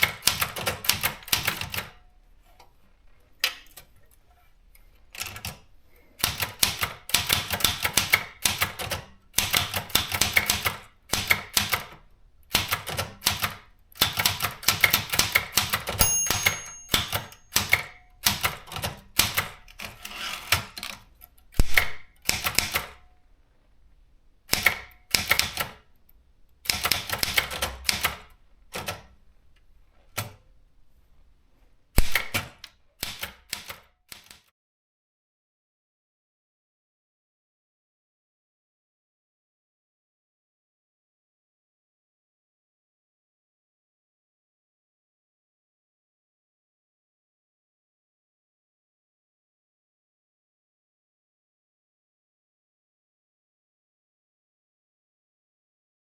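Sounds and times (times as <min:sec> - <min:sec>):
typewriter keys striking: 0:06.2 - 0:11.9, 0:12.5 - 0:20.9, 0:26.7 - 0:29.1
typewriter margin bell ring: 0:15.8 - 0:18.0.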